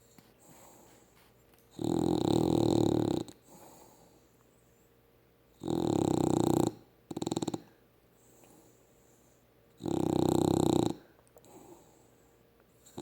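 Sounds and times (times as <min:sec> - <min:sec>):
faint breathing: 0:00.0 - 0:01.4, 0:03.4 - 0:05.0, 0:07.6 - 0:09.6, 0:10.9 - 0:13.0
dog snoring: 0:01.7 - 0:04.0, 0:05.6 - 0:07.8, 0:09.8 - 0:11.9.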